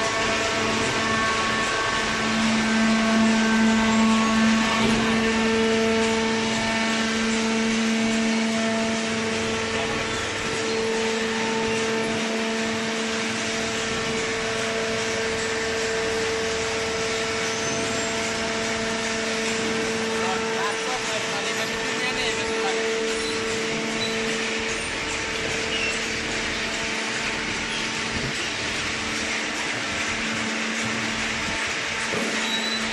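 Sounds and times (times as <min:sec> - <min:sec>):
shredding machinery running: 0:00.0 - 0:32.9.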